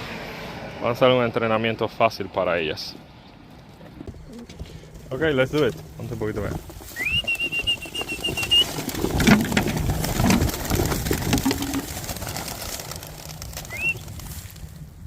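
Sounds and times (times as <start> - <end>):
pigeon cooing: 3.9 - 5.0, 6.8 - 10.4
crate knocks and rustling: 4.0 - 12.4
high whistle: 7.0 - 8.6.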